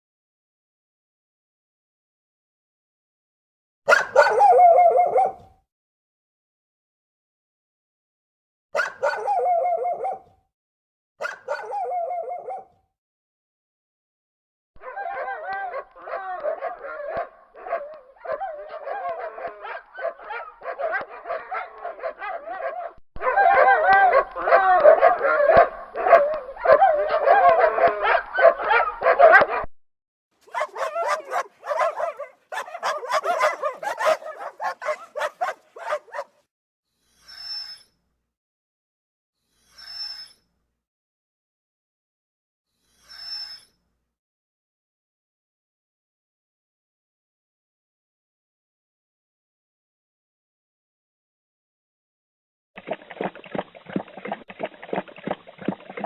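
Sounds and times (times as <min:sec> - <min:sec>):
dogs barking: 0:03.9 - 0:05.4, 0:08.8 - 0:10.3, 0:11.2 - 0:12.8, 0:14.8 - 0:29.7, 0:30.4 - 0:36.4.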